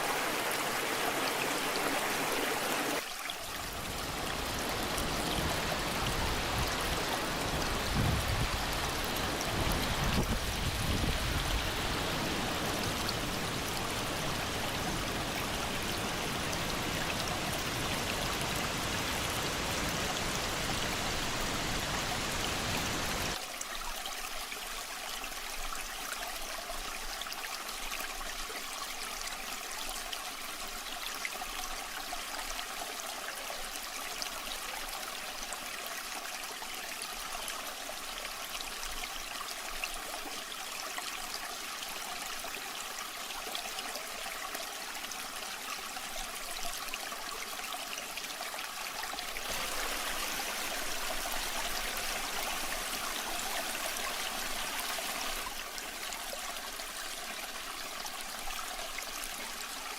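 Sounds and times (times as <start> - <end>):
waterfall water rushing: 0.0 - 3.0, 3.7 - 23.4, 49.2 - 59.6.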